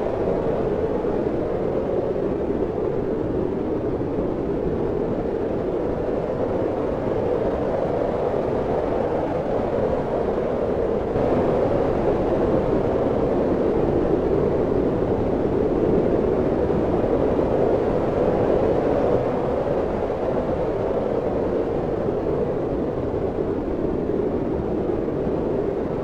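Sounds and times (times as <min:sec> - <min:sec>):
wind blowing: 0:11.1 - 0:13.4.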